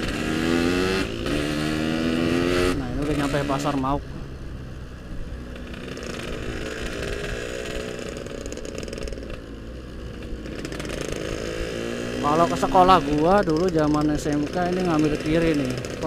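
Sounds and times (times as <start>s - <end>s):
two-stroke motorcycle engine running: 0.0s - 16.0s.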